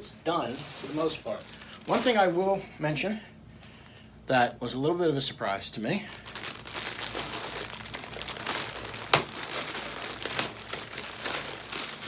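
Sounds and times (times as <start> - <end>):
plastic packaging crinkling: 0.0 - 2.6, 6.0 - 12.0.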